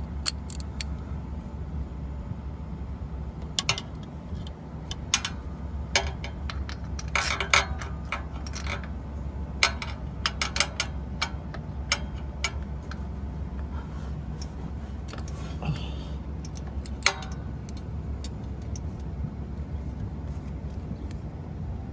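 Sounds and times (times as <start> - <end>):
steady low hum: 0.0 - 21.9
ratchet and socket clicking: 0.2 - 1.0, 16.4 - 18.9.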